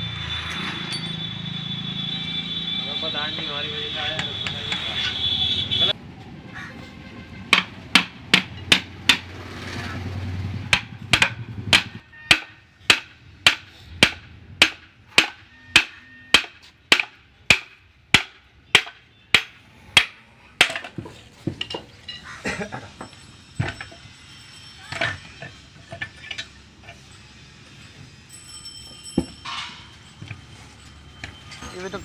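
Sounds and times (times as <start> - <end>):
hammer striking metal ringing: 0.9 - 1.4, 10.7 - 20.9.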